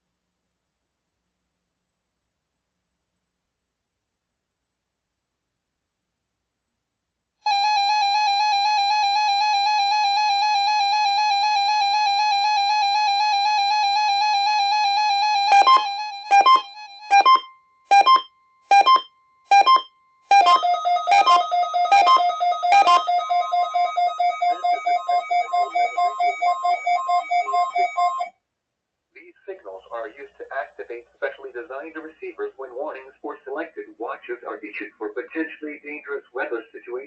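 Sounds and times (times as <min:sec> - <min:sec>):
pulsing alert tone: 0:15.5 - 0:28.3
short beeps: 0:15.5 - 0:28.3.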